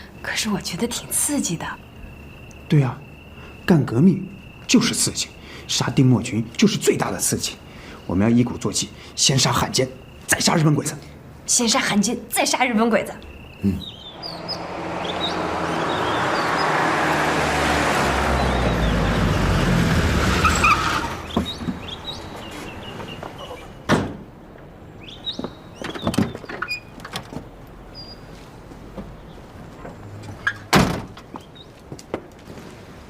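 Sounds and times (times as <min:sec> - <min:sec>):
car passing: 0:13.9 - 0:23.9.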